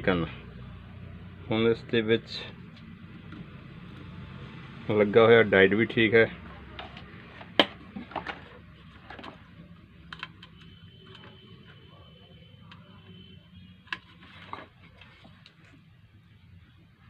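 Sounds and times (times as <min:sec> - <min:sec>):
small parts clicking and tapping: 0:10.1 - 0:11.4.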